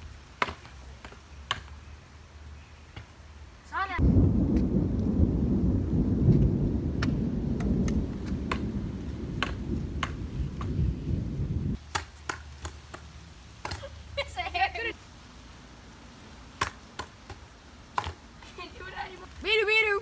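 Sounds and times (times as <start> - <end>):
low rumble of thunder: 4.0 - 11.8.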